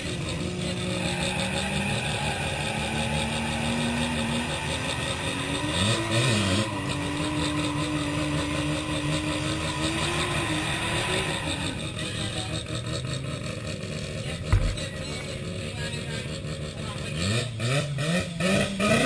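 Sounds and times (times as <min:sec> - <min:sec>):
rotary car engine revving: 0:00.0 - 0:19.0.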